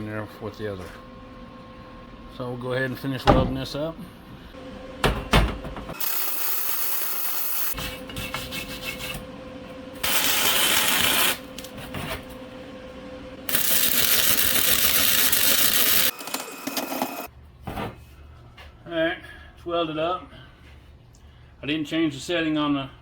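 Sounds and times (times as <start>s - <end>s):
welder hissing: 5.9s - 7.8s, 10.0s - 11.7s, 13.5s - 16.1s.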